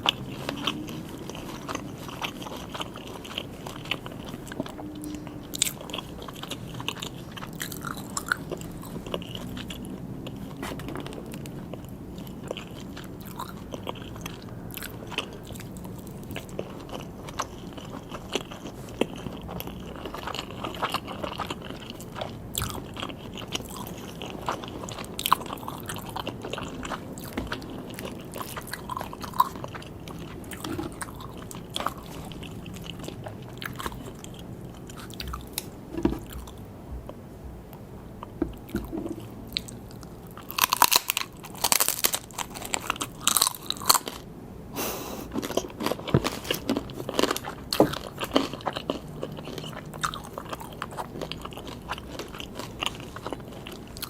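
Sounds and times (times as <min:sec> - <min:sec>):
crunching: 0:38.5 - 0:44.2.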